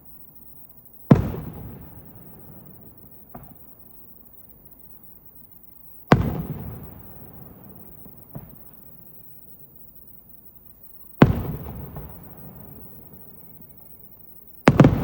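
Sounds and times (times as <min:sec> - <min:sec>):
faint pop: 0:03.3 - 0:03.6.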